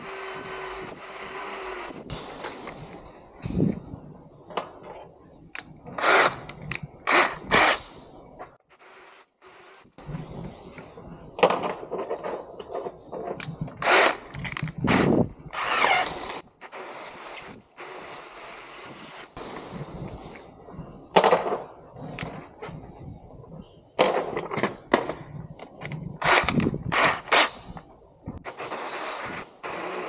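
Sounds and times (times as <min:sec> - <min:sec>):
drill whirring: 0:00.0 - 0:02.2, 0:08.7 - 0:10.0, 0:13.8 - 0:14.3, 0:14.9 - 0:19.4, 0:26.2 - 0:27.5, 0:28.4 - 0:30.0.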